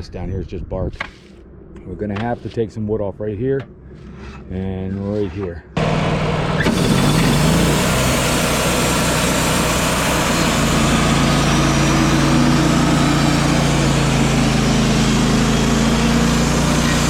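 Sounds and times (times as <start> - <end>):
sawmill engine running: 5.8 - 17.0.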